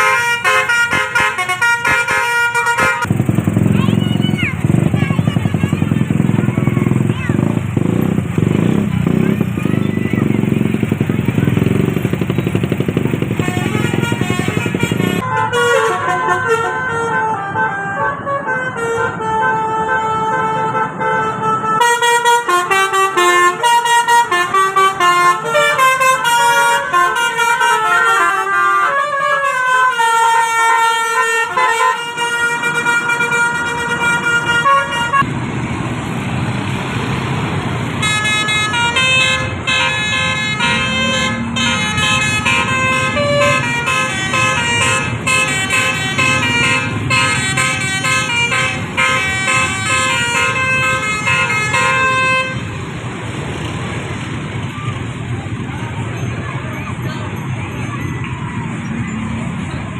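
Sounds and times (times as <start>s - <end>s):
bus musical horn playing tunes: 0.0s - 3.3s, 11.8s - 35.3s, 38.0s - 52.9s
vehicle rumble: 0.0s - 59.9s.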